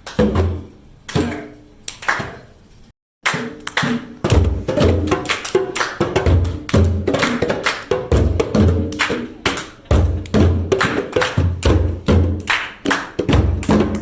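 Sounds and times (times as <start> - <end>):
hand drums playing fast rhythm: 3.9 - 14.0.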